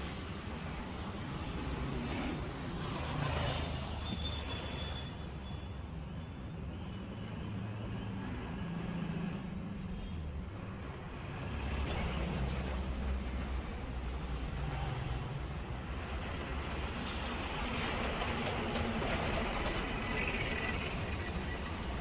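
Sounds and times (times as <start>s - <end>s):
hiss of passing traffic: 0.0s - 5.7s, 11.2s - 22.0s
vehicle engines rumbling: 0.0s - 22.0s.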